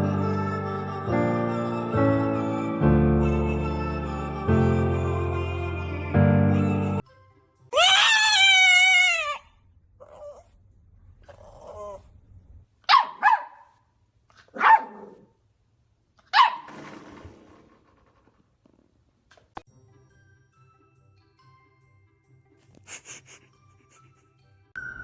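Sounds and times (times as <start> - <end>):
dog barking: 12.9 - 13.8, 14.5 - 15.2, 16.3 - 16.7.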